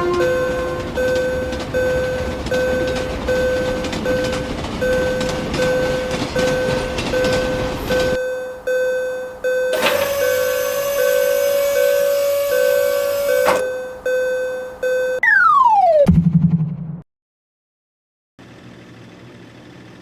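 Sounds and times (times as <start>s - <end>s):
level-crossing warning bell ringing: 0.0s - 15.2s.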